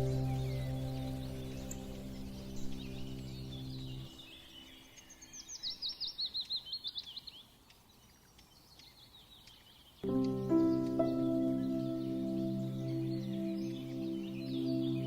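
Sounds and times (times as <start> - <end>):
background music: 0.0 - 4.1, 10.0 - 15.0
faint outdoor ambience: 0.0 - 15.0
small bird chirping: 0.0 - 15.0.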